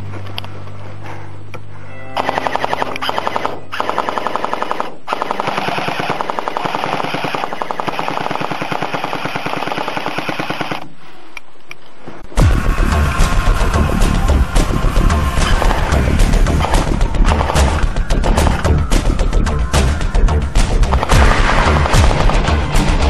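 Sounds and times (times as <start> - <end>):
airsoft gun automatic fire: 2.2 - 10.9, 21.0 - 23.0.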